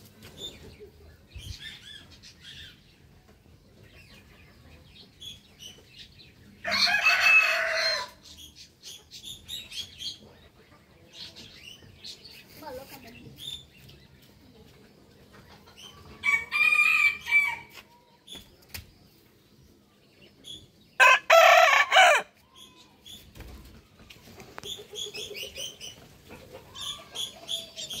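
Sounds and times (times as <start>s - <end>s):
chickens clucking: 0.0s - 28.0s
rooster crowing: 6.6s - 8.2s, 16.2s - 17.8s, 21.0s - 22.3s.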